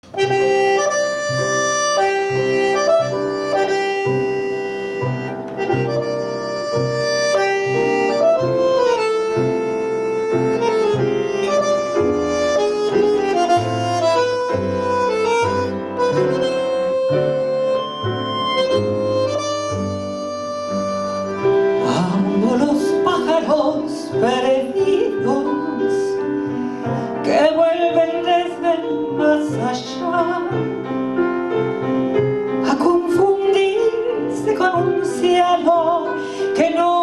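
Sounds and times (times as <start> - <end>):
bandoneon melody: 0.0 - 37.0
piano: 0.0 - 37.0
violin: 0.0 - 37.0
walking double bass: 0.1 - 26.1.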